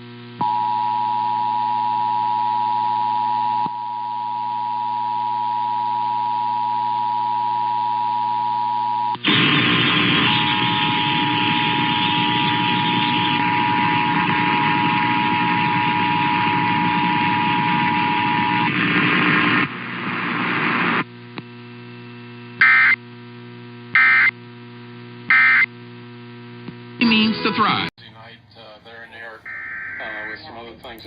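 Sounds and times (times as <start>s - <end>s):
electrical hum: 0.0s - 31.0s
loud digital data bursts: 9.2s - 16.6s
radio static: 9.2s - 31.0s.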